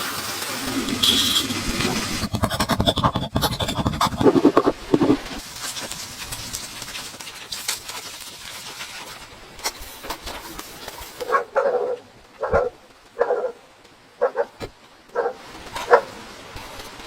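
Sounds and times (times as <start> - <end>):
scratchy rustling: 0.5 - 9.4
dog barking: 11.2 - 13.6, 14.2 - 16.2.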